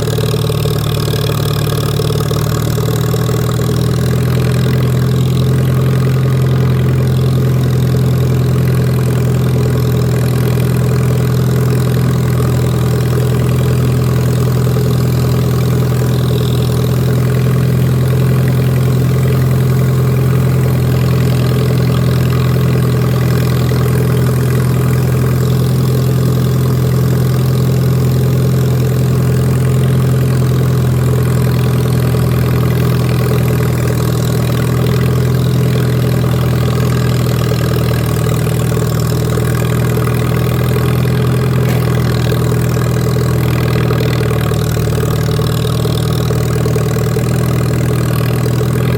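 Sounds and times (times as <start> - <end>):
lawn mower engine running: 0.0 - 48.9.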